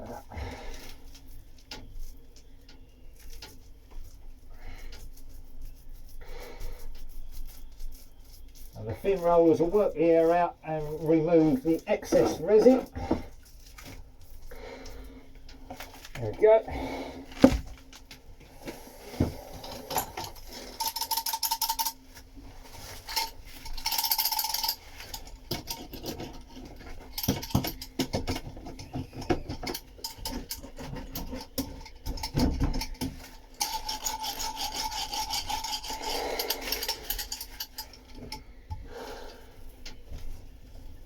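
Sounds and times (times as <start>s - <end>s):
metal roller rolling over cloth: 8.4s - 14.4s.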